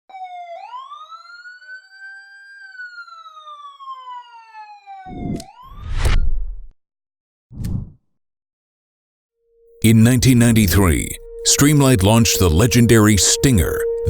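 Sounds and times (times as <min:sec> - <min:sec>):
siren wailing: 0:00.1 - 0:06.0, 0:09.8 - 0:14.0.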